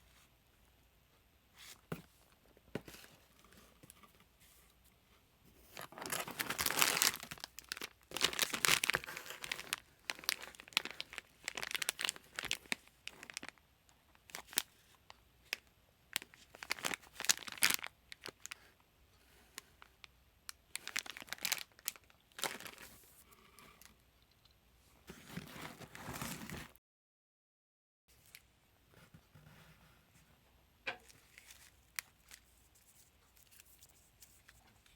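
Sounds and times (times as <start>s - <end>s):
packaging tearing and crinkling: 5.8s - 13.6s, 16.2s - 18.4s, 20.7s - 22.9s.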